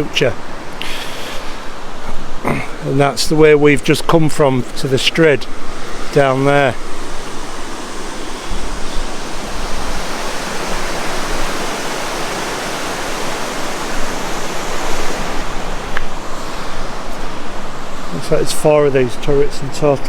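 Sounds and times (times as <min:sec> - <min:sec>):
river water rushing: 0:00.0 - 0:20.0
wind bumps on microphone: 0:05.4 - 0:18.2.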